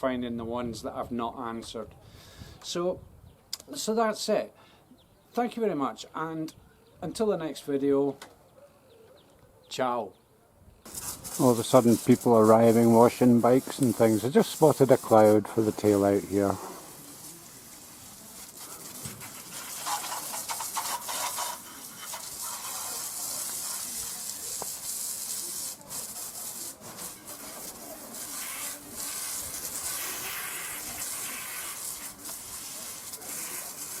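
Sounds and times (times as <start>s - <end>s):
steady high hiss: 10.9s - 34.0s.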